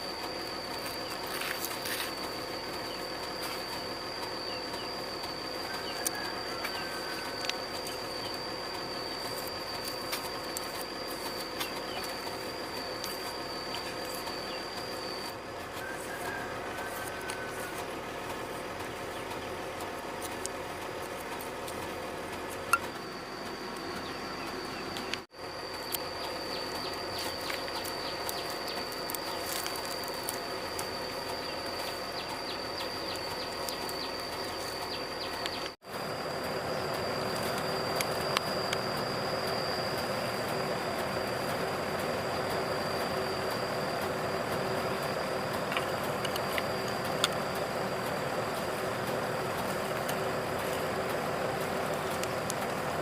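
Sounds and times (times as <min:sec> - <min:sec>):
excavator diesel engine running: 0:00.0 - 0:53.0
high thin whine: 0:00.0 - 0:53.0.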